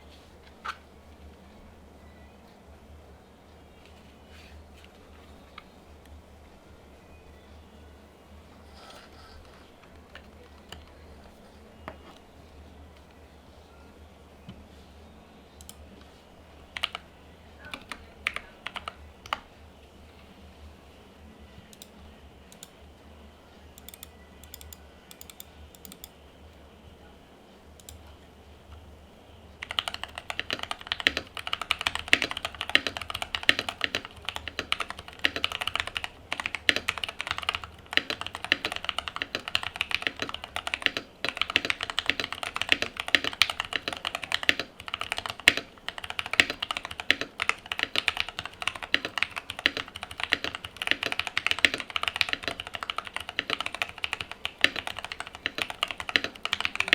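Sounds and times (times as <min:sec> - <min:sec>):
typing on mechanical keyboard: 0:16.7 - 0:17.0, 0:17.7 - 0:19.4, 0:23.8 - 0:26.1, 0:29.6 - 0:56.9.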